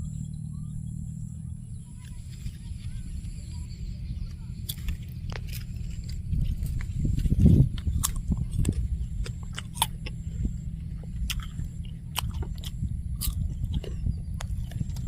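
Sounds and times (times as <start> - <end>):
steady low rumble: 0.0 - 15.0
apple being bitten and chewed: 4.6 - 15.0.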